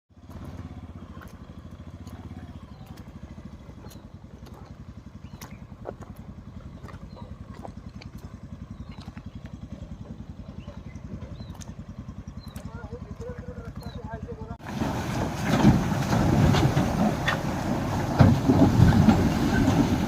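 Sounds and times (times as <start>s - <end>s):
motorcycle engine idling: 0.1s - 14.6s.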